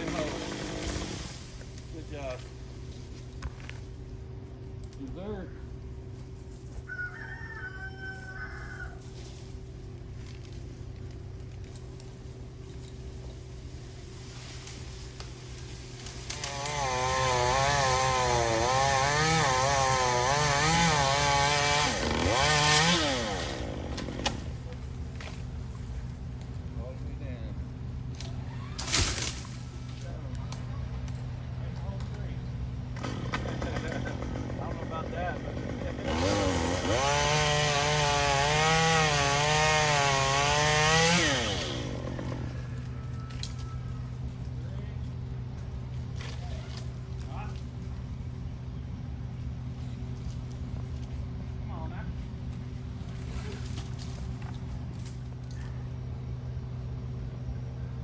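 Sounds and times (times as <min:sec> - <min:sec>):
chainsaw cutting wood: 0:00.0 - 0:01.6, 0:16.2 - 0:24.6, 0:33.0 - 0:42.6.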